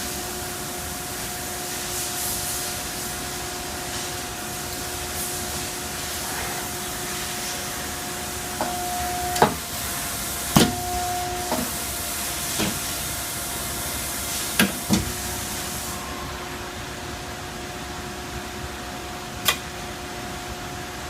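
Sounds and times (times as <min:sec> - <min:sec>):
machine hiss and hum: 0:00.0 - 0:21.0.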